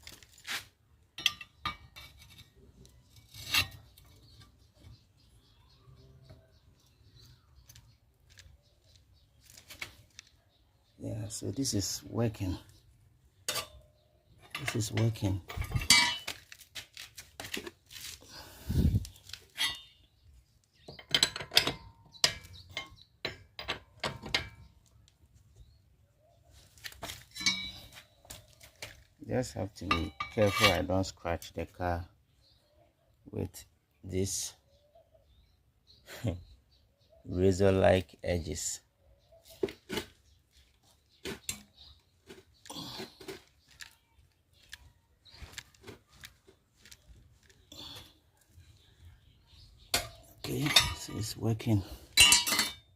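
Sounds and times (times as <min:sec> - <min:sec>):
metal clinks and knocks: 0:01.2 - 0:02.5, 0:14.4 - 0:16.6, 0:20.8 - 0:24.7, 0:27.1 - 0:28.0, 0:29.8 - 0:30.9, 0:49.9 - 0:51.4, 0:52.1 - 0:52.9
wheel spanner clanking on nuts: 0:14.5 - 0:16.5, 0:20.9 - 0:24.7, 0:27.3 - 0:28.0, 0:50.0 - 0:51.4, 0:52.1 - 0:52.9.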